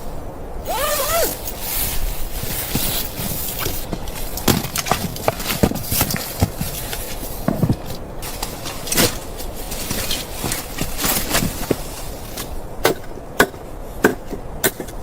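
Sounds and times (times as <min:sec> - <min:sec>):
steady hiss: 0:00.0 - 0:14.6
knocks and crunches: 0:02.4 - 0:13.0.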